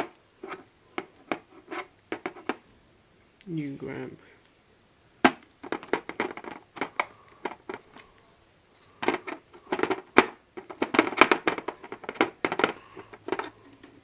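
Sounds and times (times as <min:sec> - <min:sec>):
plastic pieces clicking and clattering: 0:09.0 - 0:14.0.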